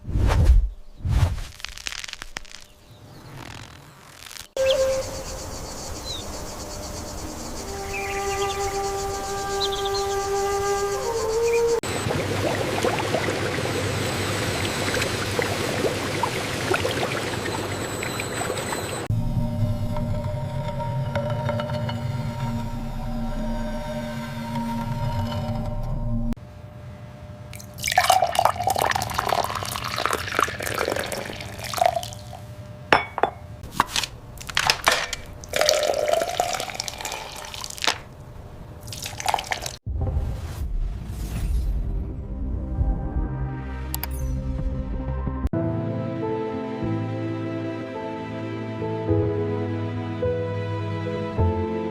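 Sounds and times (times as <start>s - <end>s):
bubbling: 11.8s - 19.1s, 27.6s - 32.4s, 34.4s - 38.2s, 38.8s - 39.8s
liquid pouring: 11.9s - 19.0s, 27.6s - 32.4s, 34.4s - 38.1s, 38.8s - 39.8s
glass clinks: 32.9s - 33.5s.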